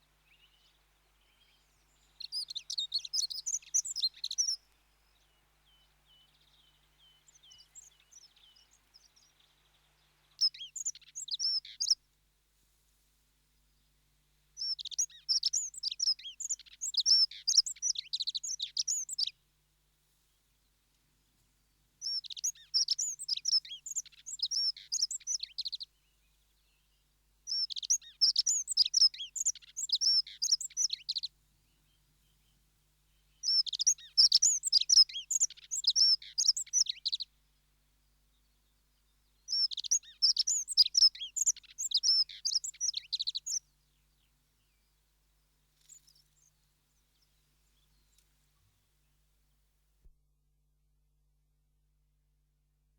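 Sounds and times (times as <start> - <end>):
bird warbling song: 0.2 - 12.0, 14.6 - 19.4, 22.0 - 37.4, 38.2 - 45.2, 45.8 - 48.3.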